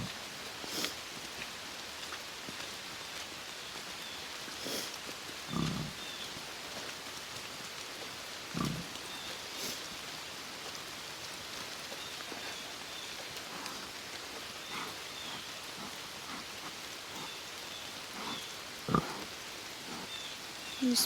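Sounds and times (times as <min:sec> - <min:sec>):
steady rain: 0:00.0 - 0:21.0
pig snuffling: 0:00.6 - 0:01.0, 0:04.5 - 0:06.1, 0:08.5 - 0:10.0, 0:11.6 - 0:21.0.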